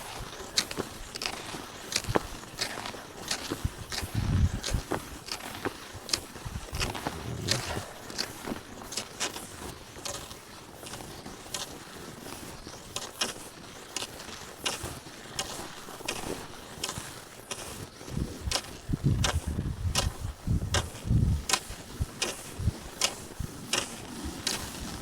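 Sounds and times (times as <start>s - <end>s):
crunching strides over snow: 0.0s - 25.0s
wind buffeting microphone: 3.6s - 5.0s, 6.4s - 8.6s, 18.1s - 23.6s.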